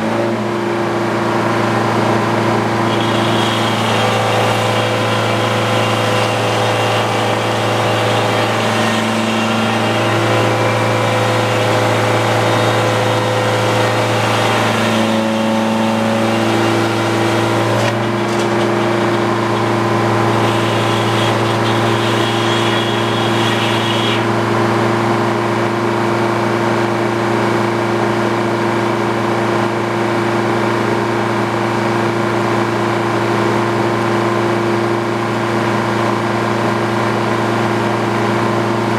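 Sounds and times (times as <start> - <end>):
sawmill engine running: 0.0 - 28.1.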